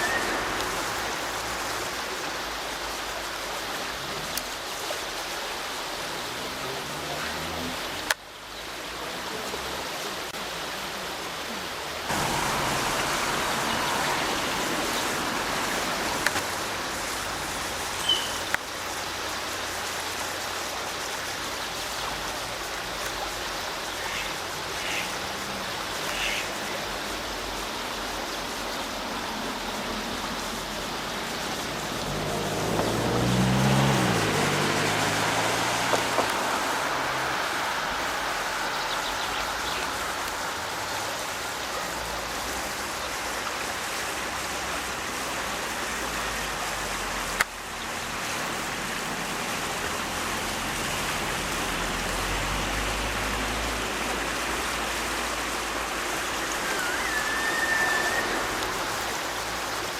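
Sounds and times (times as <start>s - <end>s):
faint short high calls: 0.0s - 1.2s, 18.0s - 18.5s, 56.5s - 59.4s
running water rushing: 0.0s - 59.9s.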